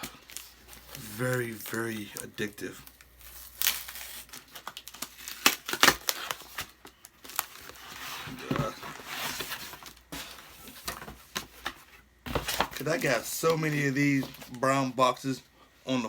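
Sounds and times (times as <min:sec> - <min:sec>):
tape tearing: 0:00.0 - 0:11.4
packing material crinkling: 0:00.0 - 0:15.0.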